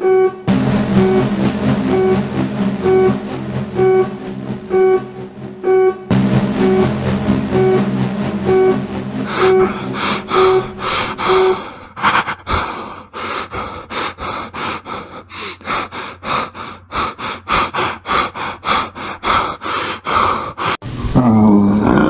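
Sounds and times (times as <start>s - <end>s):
tune with plucked note: 0.0s - 11.7s
person panting heavily: 10.9s - 20.8s.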